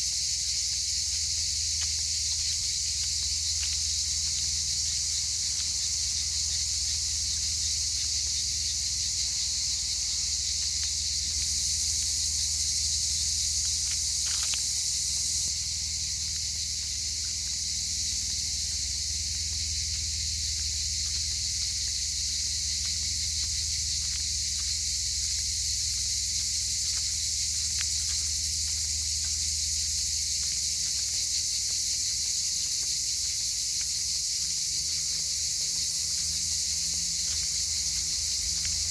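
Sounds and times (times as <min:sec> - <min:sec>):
cicadas chorus: 0:00.0 - 0:38.9
faint ticks: 0:13.5 - 0:14.8, 0:16.3 - 0:29.5, 0:36.1 - 0:38.9.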